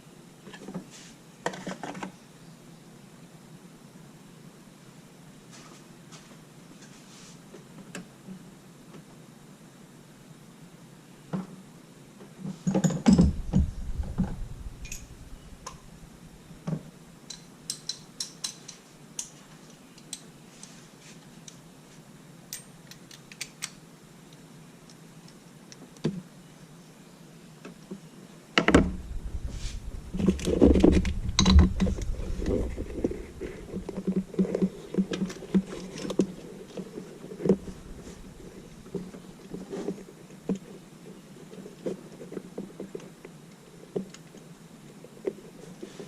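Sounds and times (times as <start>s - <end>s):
metal tools clinking: 12.7s - 15.9s
bumping and rustling: 13.0s - 16.9s, 28.6s - 40.0s.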